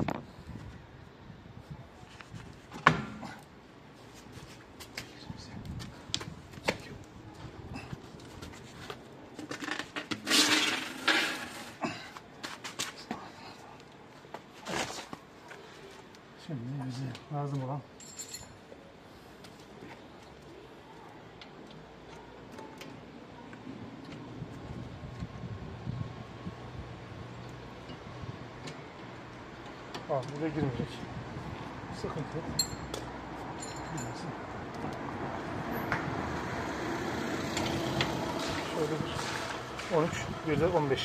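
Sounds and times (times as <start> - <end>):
loud noisy scrapes: 10.2 - 11.8, 37.8 - 40.3.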